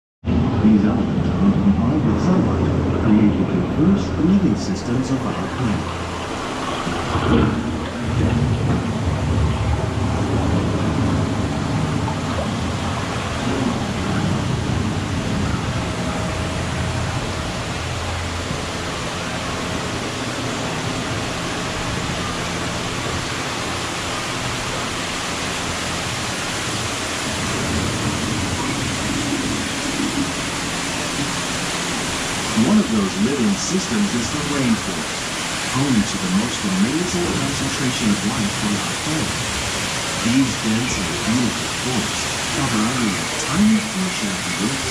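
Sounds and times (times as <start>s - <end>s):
thunder rumbling: 0.3s - 20.0s, 26.7s - 33.4s
rain hissing: 1.1s - 44.9s.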